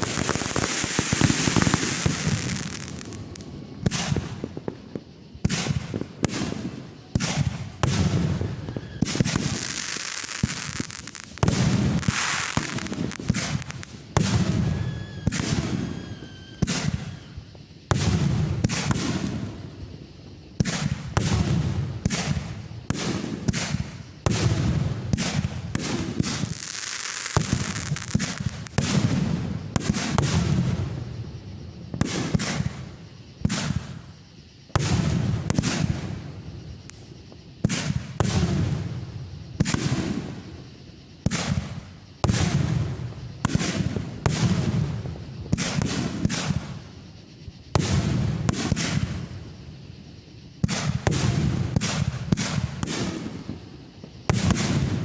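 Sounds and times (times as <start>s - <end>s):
firework shells bursting: 0.0s - 20.0s, 20.6s - 30.5s
firework crackling: 0.0s - 31.3s.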